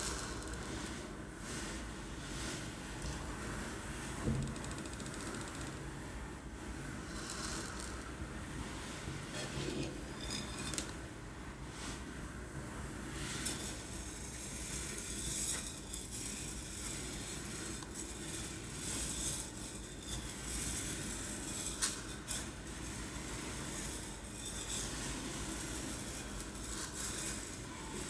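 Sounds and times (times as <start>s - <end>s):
rice grains rattling in container: 0.0s - 1.0s, 7.0s - 8.2s, 13.4s - 28.0s.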